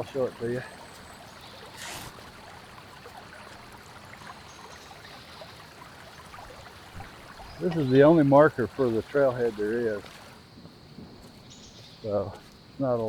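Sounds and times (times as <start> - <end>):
creek water rushing: 0.0 - 10.5
brief scuff: 1.8 - 2.2.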